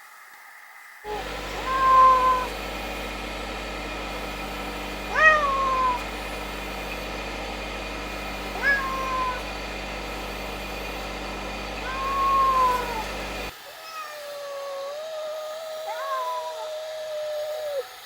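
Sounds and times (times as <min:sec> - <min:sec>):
low background hum: 0:01.1 - 0:13.5
cat meowing: 0:01.2 - 0:02.6, 0:05.1 - 0:06.1, 0:08.5 - 0:09.5, 0:11.8 - 0:13.2, 0:13.8 - 0:17.5.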